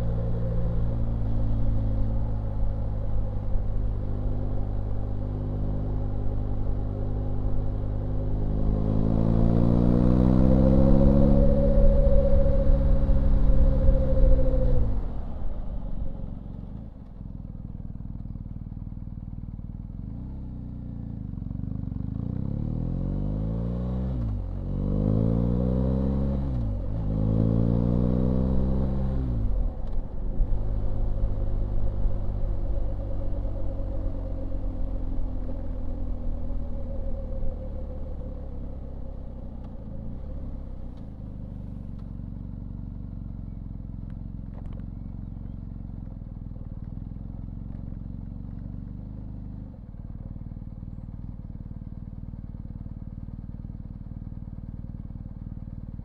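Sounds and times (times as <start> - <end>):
motorcycle engine revving: 0.0 - 16.8, 19.8 - 51.8.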